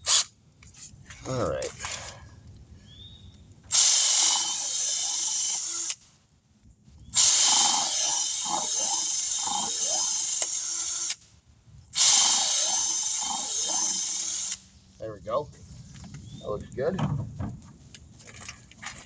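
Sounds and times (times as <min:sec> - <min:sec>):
power drill whirring: 0:03.7 - 0:06.1, 0:07.2 - 0:11.2, 0:12.0 - 0:14.8.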